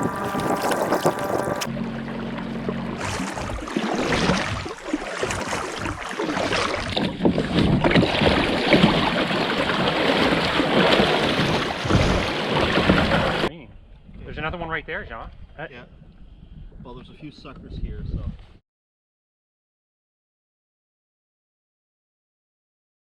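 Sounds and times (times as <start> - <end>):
wind noise: 0.0 - 1.7, 3.0 - 18.6
water splashing: 0.0 - 13.5.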